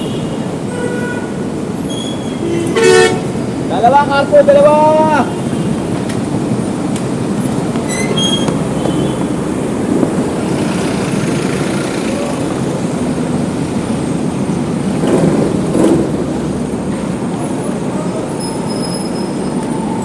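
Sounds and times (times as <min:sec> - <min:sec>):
traffic rumble: 0:00.0 - 0:20.0
short high-pitched squeaks: 0:01.9 - 0:02.4, 0:07.9 - 0:08.7
vehicle passing: 0:03.2 - 0:18.4.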